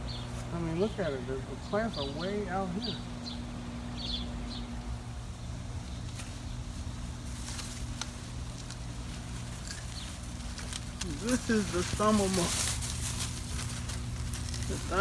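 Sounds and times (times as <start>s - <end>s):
low hum and rumble: 0.0s - 15.0s
faint clicks and rustles: 5.8s - 15.0s.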